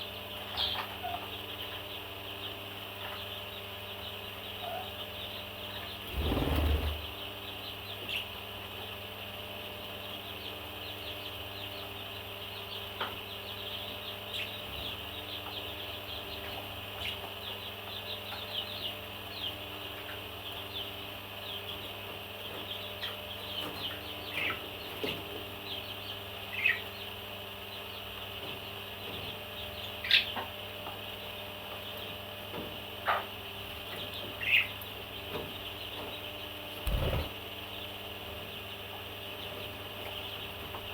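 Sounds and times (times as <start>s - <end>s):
parrots chirping and chattering: 33.0s - 37.8s.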